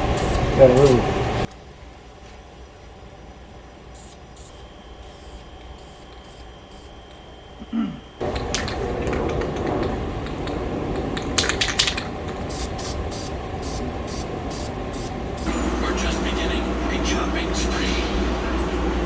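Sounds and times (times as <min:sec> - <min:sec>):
aerosol spray can hissing: 0:00.0 - 0:01.0, 0:04.0 - 0:07.0, 0:12.4 - 0:16.4.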